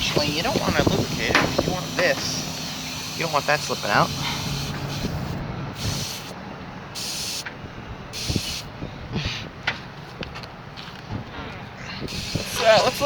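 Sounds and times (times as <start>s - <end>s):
air hissing out of tire: 0.0s - 7.5s, 8.1s - 9.5s, 12.0s - 13.0s.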